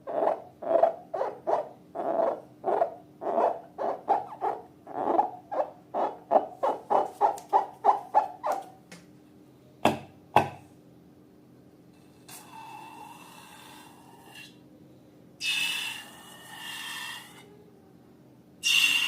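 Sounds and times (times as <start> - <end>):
slime squeaking through balloon: 0.1 - 8.7.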